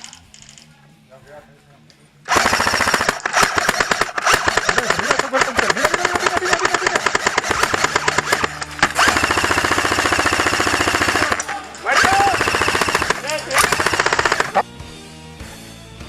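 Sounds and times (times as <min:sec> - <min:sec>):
airsoft guns firing bursts: 0:02.3 - 0:14.6.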